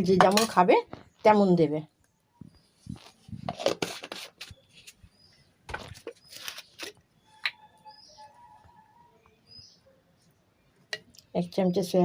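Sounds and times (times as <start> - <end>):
spoon scraping mixing bowl: 3.0 - 4.6
faint high chirps: 7.2 - 11.9.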